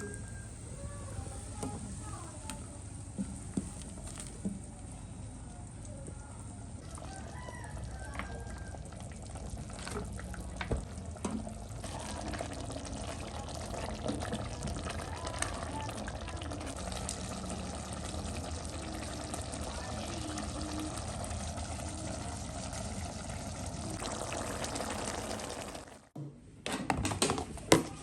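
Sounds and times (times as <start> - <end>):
water running from a tap: 11.9 - 26.1.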